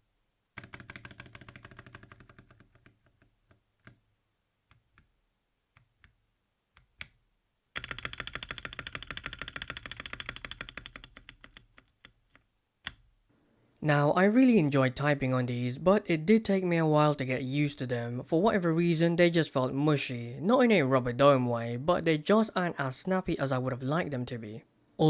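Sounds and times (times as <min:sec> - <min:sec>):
mechanical keyboard typing: 0:00.6 - 0:03.2, 0:07.8 - 0:13.0.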